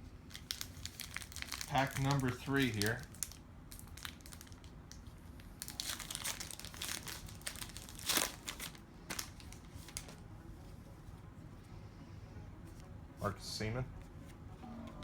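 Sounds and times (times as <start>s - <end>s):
card pack wrapper crinkling: 0.3s - 10.2s.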